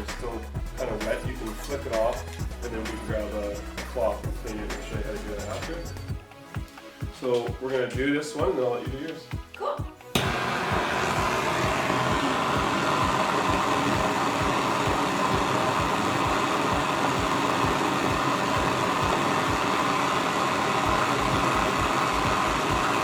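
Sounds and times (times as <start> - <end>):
torch flame burning: 10.1 - 23.0.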